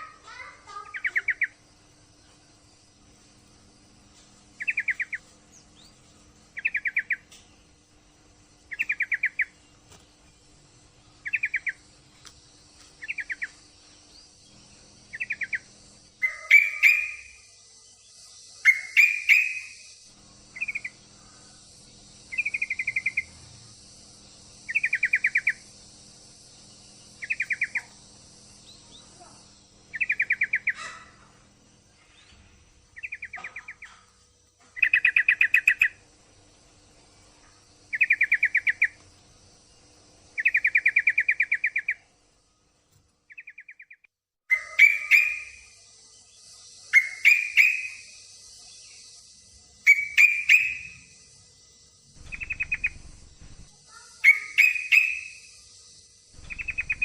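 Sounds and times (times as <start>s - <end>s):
bird rattling trilled calls: 0.0s - 1.6s, 4.6s - 5.9s, 15.1s - 17.4s, 18.6s - 19.9s, 44.5s - 45.7s, 46.9s - 48.2s, 49.8s - 51.1s, 52.2s - 55.6s, 56.4s - 57.0s.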